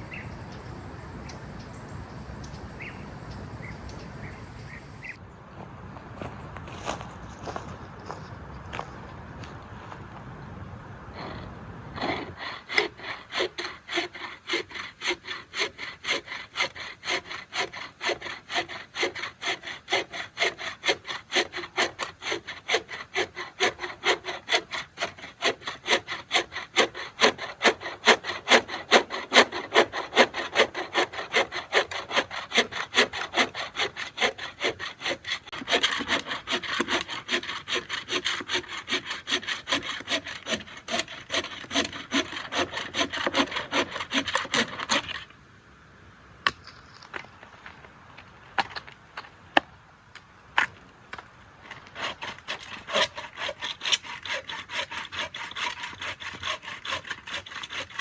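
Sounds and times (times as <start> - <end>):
hand saw cutting wood: 11.2 - 45.3, 50.6 - 58.0.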